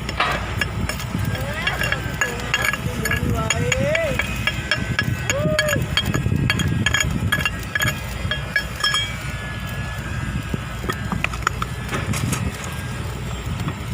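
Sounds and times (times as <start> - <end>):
metal clinking and tapping: 0.0 - 9.2
low mechanical rumble: 0.0 - 13.9.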